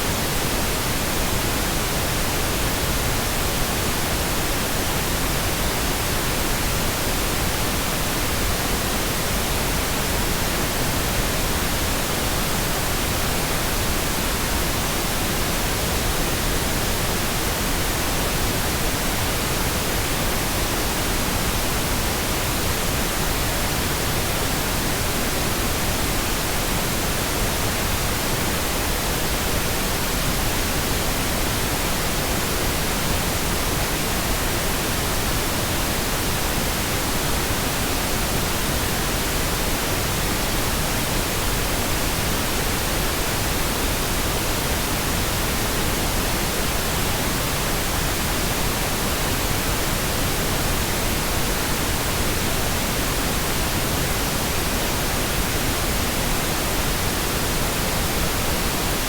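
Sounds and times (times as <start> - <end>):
pink noise hiss: 0.0 - 59.0.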